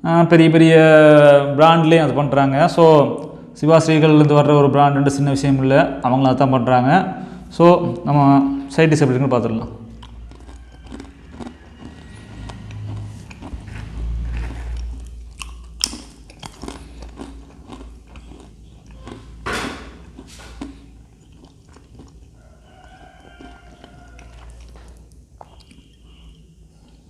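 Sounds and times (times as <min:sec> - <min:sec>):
man chewing crunchy food: 0:09.8 - 0:27.0.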